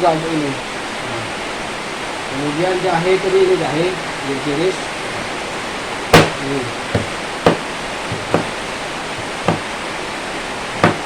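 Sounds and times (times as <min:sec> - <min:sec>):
steady background hiss: 0:00.0 - 0:11.0
knife chopping on a cutting board: 0:07.0 - 0:08.5, 0:09.2 - 0:09.7.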